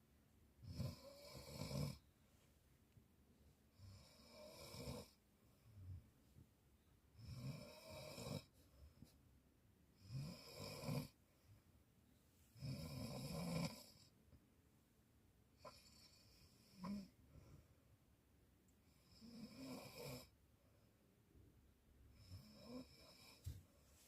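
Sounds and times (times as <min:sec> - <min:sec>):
girl snoring: 0:00.6 - 0:02.0, 0:10.0 - 0:11.2, 0:12.6 - 0:14.1, 0:15.6 - 0:17.2, 0:19.0 - 0:20.3, 0:22.2 - 0:23.5.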